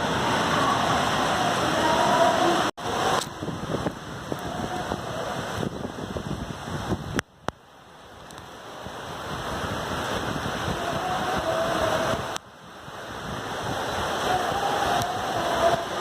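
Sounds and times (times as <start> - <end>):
rain: 0.0 - 16.0
wind: 0.0 - 16.0.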